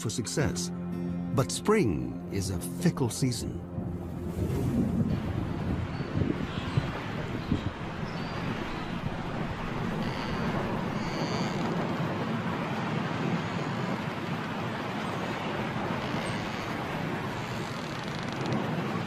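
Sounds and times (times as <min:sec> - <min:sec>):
strong wind blowing: 0:03.6 - 0:17.5.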